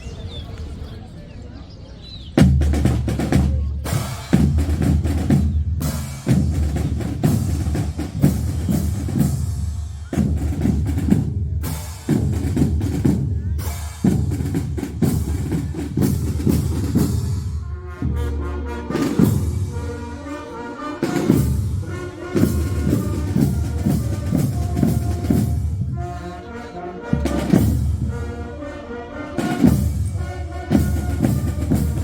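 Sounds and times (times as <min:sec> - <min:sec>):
snare drum rolls: 0:29.4 - 0:32.0.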